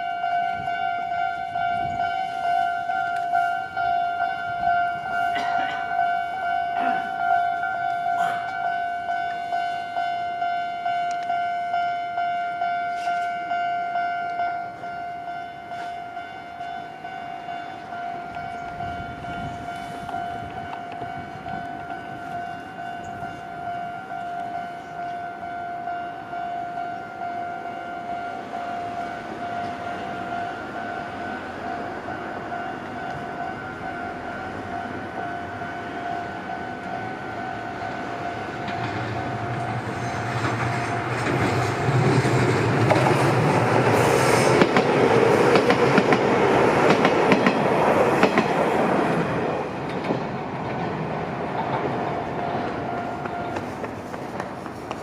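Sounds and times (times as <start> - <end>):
level crossing electronic bell alarm: 0.0 - 40.5
train running noise: 0.0 - 55.0.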